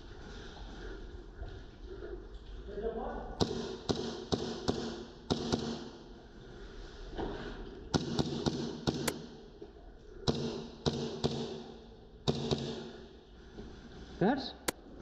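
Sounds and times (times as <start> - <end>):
airsoft guns popping: 8.0 - 9.3.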